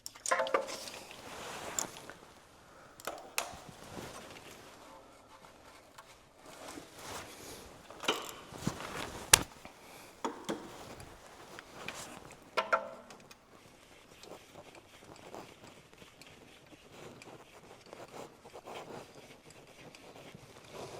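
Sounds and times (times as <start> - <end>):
light rustling: 0.5 - 12.6
hand tools clicking and knocking: 3.0 - 3.8, 8.0 - 9.6.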